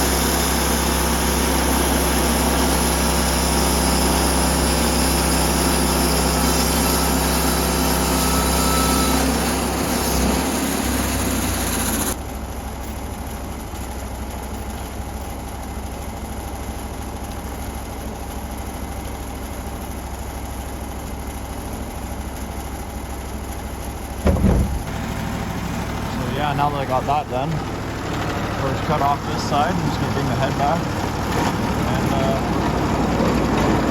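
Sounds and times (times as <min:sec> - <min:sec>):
saw blade cutting log: 0:00.0 - 0:12.2
sawmill engine running: 0:00.0 - 0:33.9.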